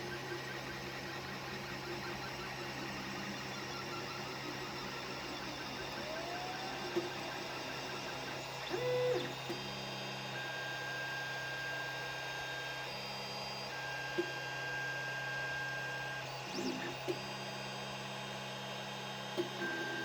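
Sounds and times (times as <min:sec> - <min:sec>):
stepper motors whining: 0:00.3 - 0:09.4.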